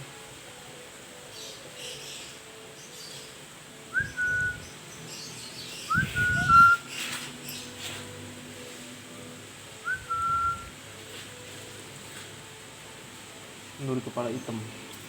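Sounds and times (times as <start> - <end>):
short whistled notes: 4.0 - 4.6, 5.9 - 6.9, 9.9 - 10.7.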